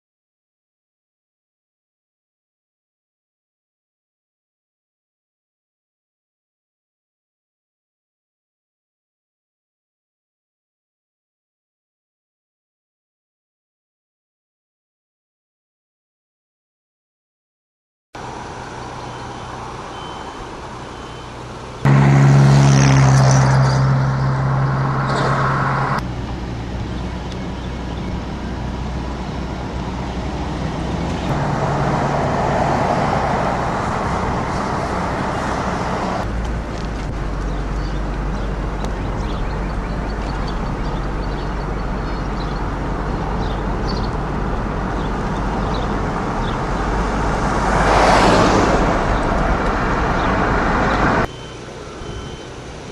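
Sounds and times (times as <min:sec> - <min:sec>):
low engine hum: 0:18.2 - 0:52.9
motor vehicle and road noise: 0:18.2 - 0:52.9.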